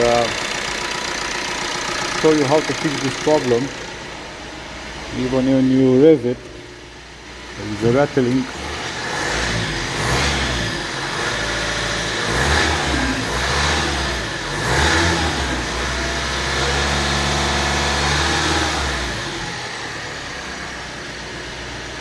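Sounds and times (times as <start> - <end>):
timing chain rattling: 0.0 - 3.9
diesel engine revving: 0.0 - 22.0.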